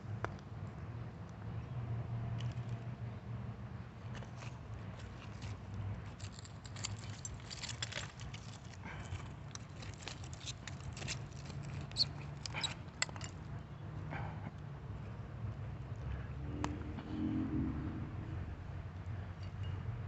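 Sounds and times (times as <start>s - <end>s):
glass shards clinking: 6.2s - 8.7s, 9.6s - 13.4s
low rumble: 16.5s - 18.6s.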